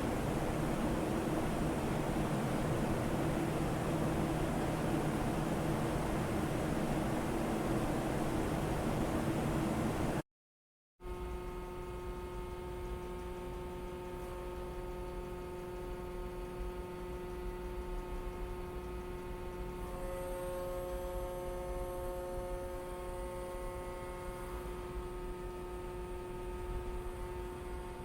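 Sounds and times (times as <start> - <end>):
ship machinery hum: 0.0 - 10.2.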